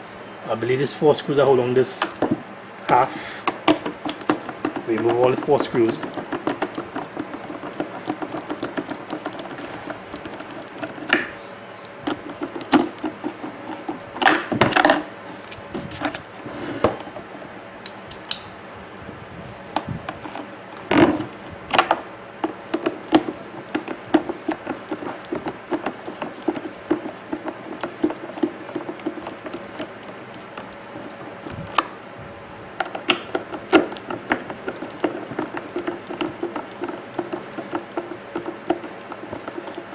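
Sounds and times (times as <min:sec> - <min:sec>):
screwdriver scratching and ticking: 0:02.0 - 0:18.4, 0:19.7 - 0:32.0, 0:32.8 - 0:39.9
clicks and knocks of handled parts: 0:02.0 - 0:18.5, 0:19.7 - 0:32.0, 0:32.8 - 0:39.9.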